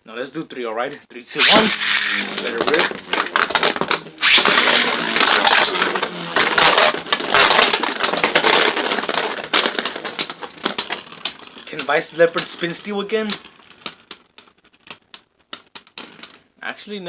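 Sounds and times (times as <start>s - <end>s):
spinning tops whirring and clashing: 1.3s - 11.0s.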